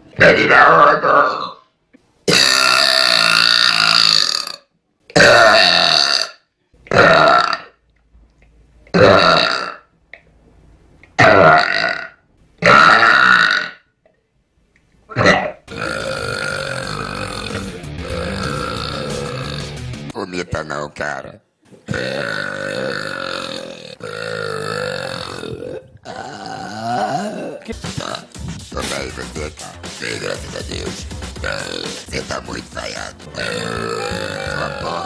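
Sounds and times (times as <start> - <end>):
person burping loudly: 0.2 - 1.6, 2.3 - 7.8, 8.9 - 9.9, 11.2 - 13.9, 15.1 - 19.8, 21.9 - 28.3, 31.4 - 32.1, 33.3 - 35.0.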